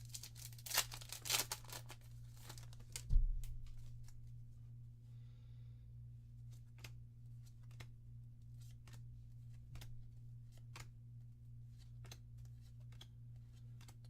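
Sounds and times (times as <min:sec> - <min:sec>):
cards being flipped: 0:00.0 - 0:03.1, 0:06.4 - 0:11.0, 0:11.7 - 0:14.0
steady low hum: 0:00.0 - 0:13.8.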